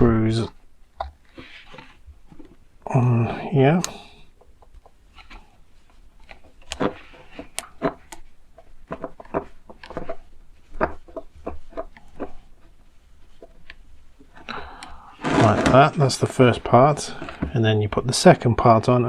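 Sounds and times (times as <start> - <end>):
plastic parts clicking and tapping: 3.8 - 18.0.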